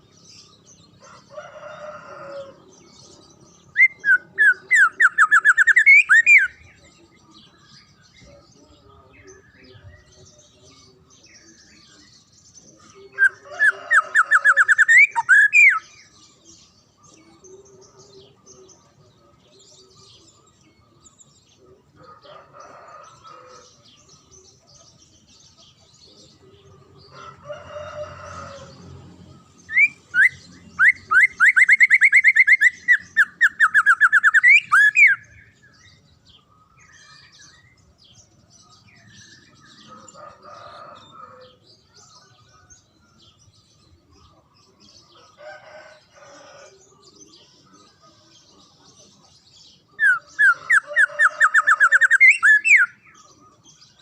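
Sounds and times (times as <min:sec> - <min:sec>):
songbird trilling: 0:03.3 - 0:06.8, 0:11.4 - 0:16.2, 0:29.7 - 0:38.2, 0:50.0 - 0:53.7.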